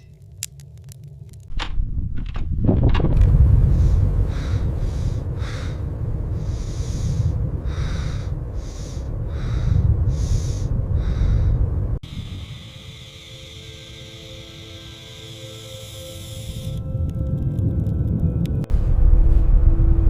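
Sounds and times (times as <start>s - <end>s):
blizzard wind rumbling: 0.2s - 20.0s
short hissing crunching strokes: 6.4s - 16.8s.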